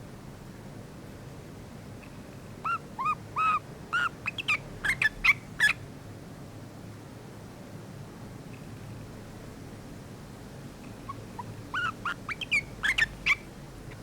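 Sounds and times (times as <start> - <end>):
bird chirping: 2.6 - 5.8, 11.0 - 14.0.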